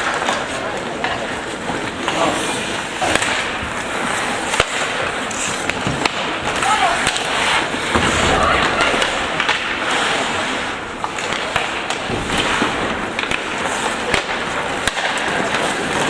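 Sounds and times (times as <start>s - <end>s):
hockey sticks and puck clacking: 0.0s - 16.0s
skates scraping ice: 0.0s - 16.0s.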